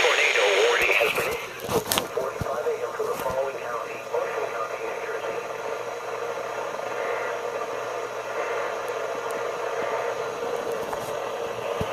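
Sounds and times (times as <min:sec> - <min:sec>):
radio static hiss: 0:00.0 - 0:11.9.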